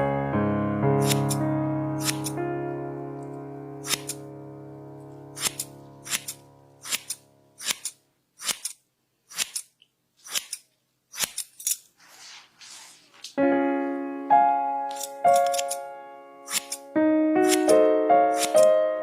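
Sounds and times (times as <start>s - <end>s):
loud piano-like chord: 0.0s - 7.5s, 13.4s - 19.0s
soft keyboard music: 0.0s - 7.6s, 13.2s - 19.0s
scissors snipping hair: 1.0s - 1.4s, 2.0s - 2.4s, 3.8s - 4.2s, 5.4s - 11.8s, 14.9s - 15.8s, 16.5s - 18.7s
soft rustle: 11.8s - 14.0s.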